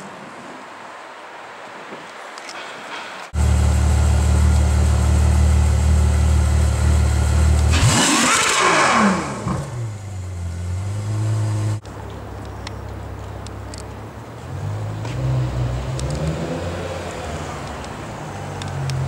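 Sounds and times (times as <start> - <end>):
exhaust rush: 2.9 - 11.8
another car engine running: 3.4 - 11.8
car engine revving: 3.4 - 11.8.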